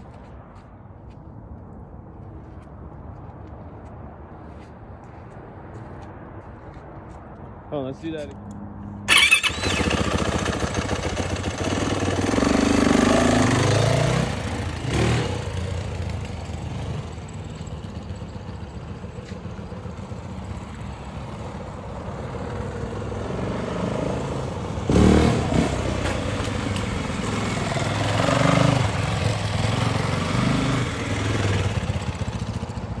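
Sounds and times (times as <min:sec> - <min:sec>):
dirt bike engine revving: 0:09.1 - 0:15.6, 0:23.3 - 0:32.5.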